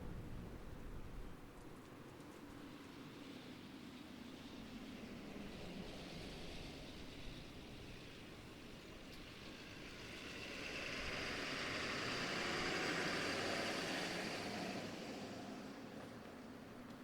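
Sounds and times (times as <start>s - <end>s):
wind noise: 0.0s - 2.7s.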